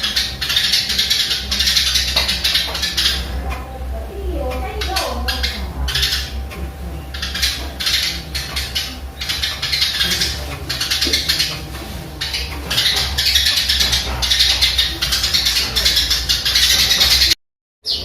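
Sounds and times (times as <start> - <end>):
steady low hum: 0.0 - 17.4
sparrow singing: 0.0 - 18.0.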